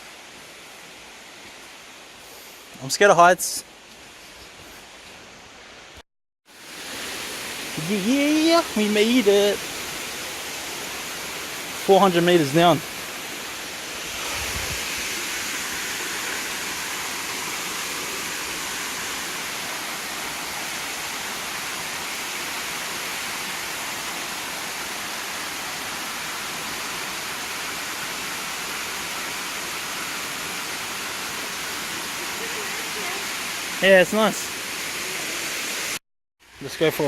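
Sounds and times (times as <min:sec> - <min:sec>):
small waterfall splashing into pool: 0:06.4 - 0:36.0.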